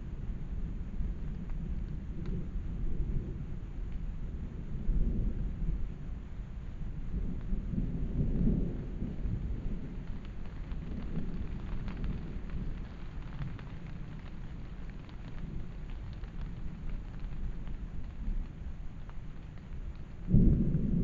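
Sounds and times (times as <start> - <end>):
steady rain falling: 0.0 - 21.0
raindrops ticking: 7.2 - 21.0.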